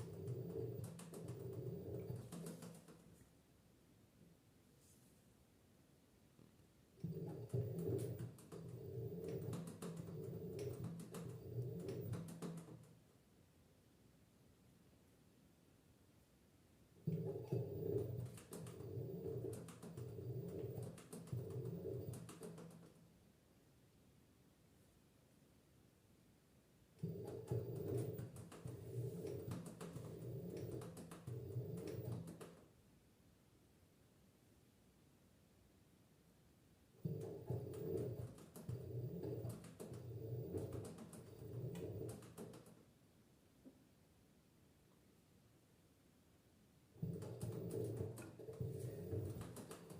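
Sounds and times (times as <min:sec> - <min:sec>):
washing machine motor hum: 0:00.0 - 0:03.0, 0:07.0 - 0:12.8, 0:17.0 - 0:22.9, 0:27.0 - 0:32.6, 0:37.0 - 0:42.7, 0:47.0 - 0:49.9
small knocks and clicks: 0:00.0 - 0:03.2, 0:07.0 - 0:13.0, 0:17.1 - 0:23.0, 0:27.0 - 0:32.7, 0:37.0 - 0:42.8, 0:47.0 - 0:49.9.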